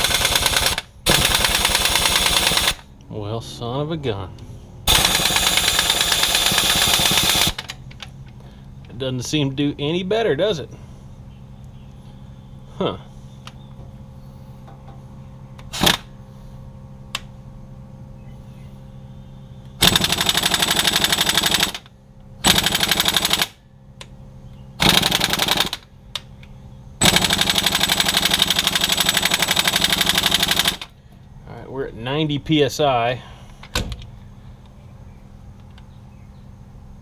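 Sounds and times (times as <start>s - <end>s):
air impact wrench hammering: 0.0s - 2.9s, 4.9s - 7.8s, 15.7s - 16.1s, 19.8s - 23.6s, 24.8s - 25.9s, 27.0s - 31.0s.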